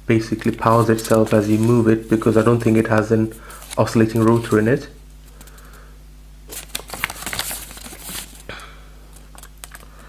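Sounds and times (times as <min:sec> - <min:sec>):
paper rustling and crinkling: 0:00.3 - 0:05.7, 0:06.5 - 0:08.5.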